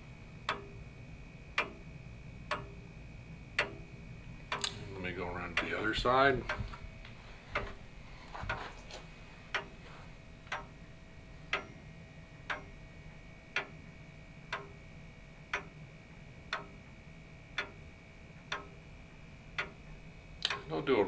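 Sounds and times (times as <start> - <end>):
clock ticking: 0.5 - 0.8, 1.5 - 1.9, 2.5 - 2.9, 3.5 - 6.7, 9.5 - 9.8, 10.5 - 10.9, 11.5 - 12.8, 13.5 - 13.8, 14.5 - 14.8, 15.4 - 15.8, 16.4 - 16.9, 17.5 - 18.9, 19.5 - 21.0.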